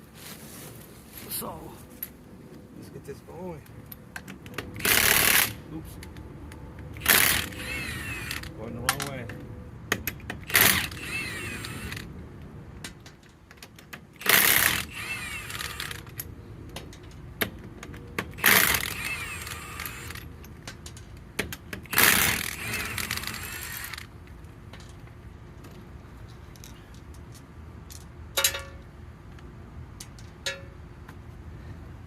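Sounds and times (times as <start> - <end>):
impact wrench rattling: 4.7 - 5.6, 18.3 - 24.1
motor winding down: 4.8 - 5.6, 7.0 - 8.5, 10.5 - 12.1, 14.2 - 16.0, 18.4 - 20.2, 21.9 - 24.1.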